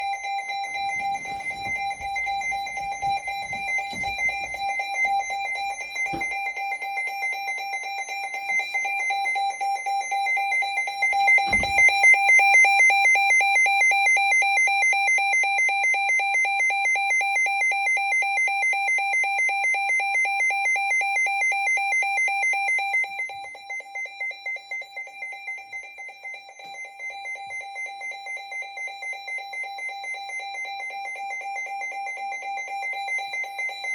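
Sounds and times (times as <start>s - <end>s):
pulsing electronic alarm beep: 0.0s - 33.9s
knock: 3.0s - 4.6s, 6.0s - 6.5s, 11.5s - 11.9s.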